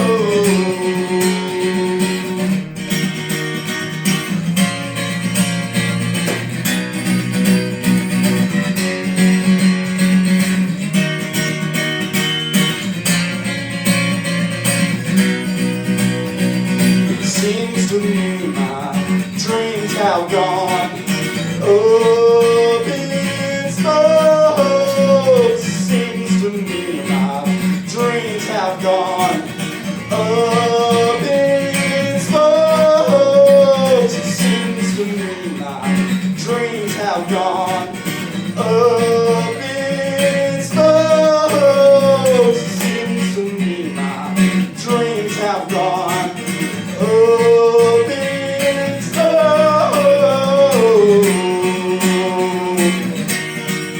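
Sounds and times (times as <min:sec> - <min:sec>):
man singing: 0:00.0 - 0:02.9, 0:16.8 - 0:53.6
guitar: 0:00.0 - 0:53.9.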